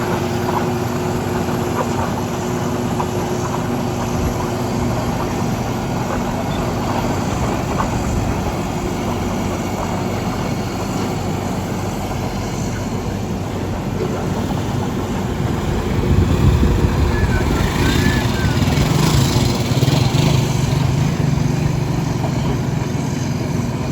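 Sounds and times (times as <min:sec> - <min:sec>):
diesel engine running: 0:00.0 - 0:23.9.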